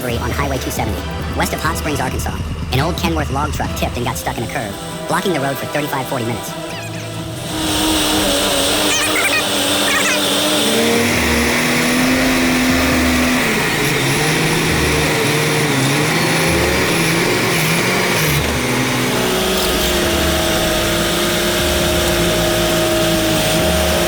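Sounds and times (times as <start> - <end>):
heavy truck engine running: 0.0 - 24.0.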